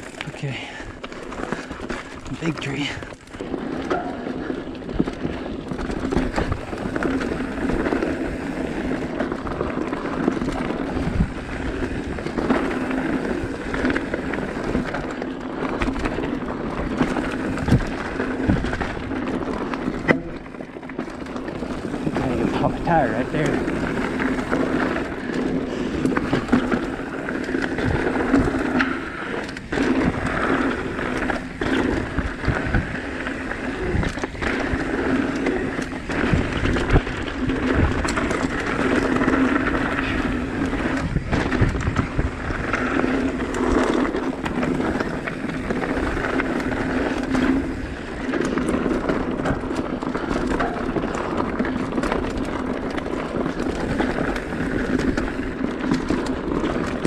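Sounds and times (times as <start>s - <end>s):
bike knocking and rattling: 0.0s - 57.0s
bike tyre noise on rocky trail: 0.0s - 57.0s.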